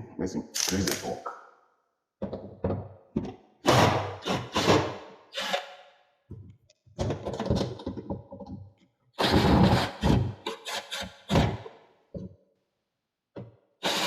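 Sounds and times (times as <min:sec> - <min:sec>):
wooden panels knocking and clattering: 0:02.2 - 0:03.8, 0:06.3 - 0:08.8.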